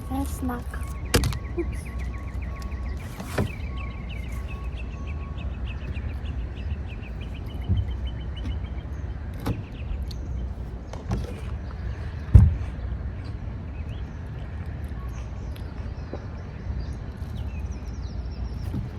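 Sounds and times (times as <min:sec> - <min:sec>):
bird chirping rapidly: 0:00.0 - 0:10.7.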